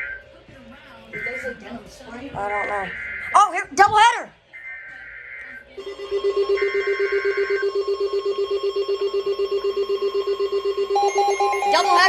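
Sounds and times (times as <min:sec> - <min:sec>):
steady alert tone: 0:05.8 - 0:12.0.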